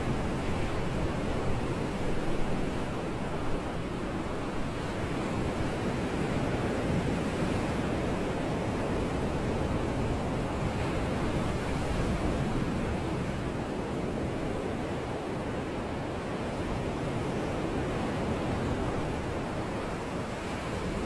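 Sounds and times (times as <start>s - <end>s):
sea waves washing in: 0.0s - 21.0s.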